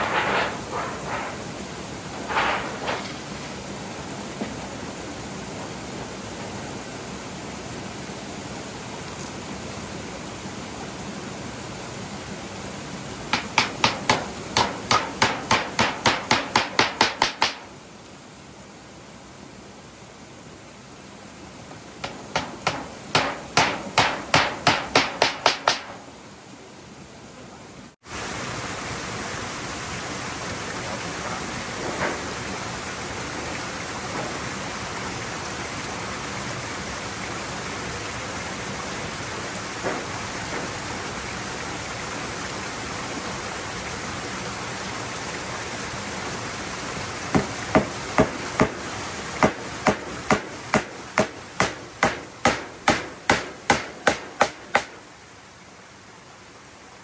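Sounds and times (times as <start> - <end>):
steady rushing noise: 0.0 - 8.3
hammer blows: 22.0 - 26.0.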